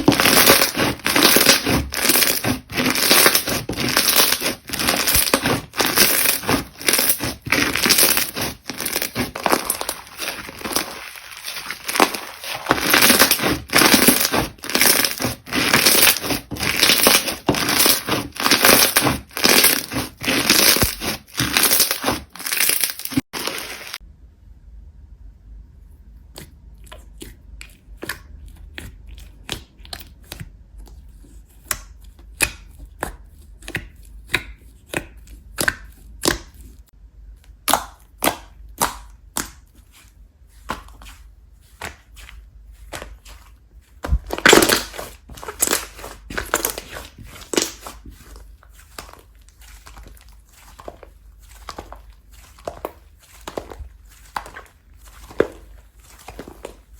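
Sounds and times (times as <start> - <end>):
slime squishing and crackling: 0.0 - 24.0, 37.5 - 56.9.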